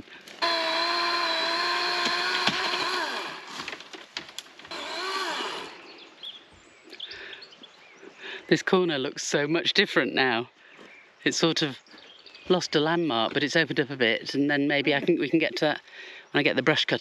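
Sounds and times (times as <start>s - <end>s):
chainsaw revving: 0.0s - 3.8s, 4.6s - 6.0s.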